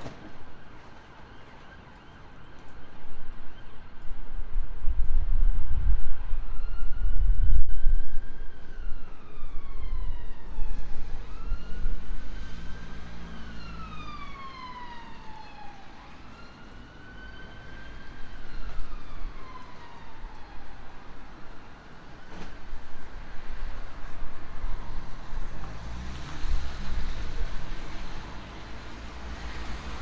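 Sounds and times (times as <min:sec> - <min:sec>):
emergency vehicle siren wailing: 0:00.0 - 0:30.0
low rumble of traffic: 0:00.0 - 0:30.0.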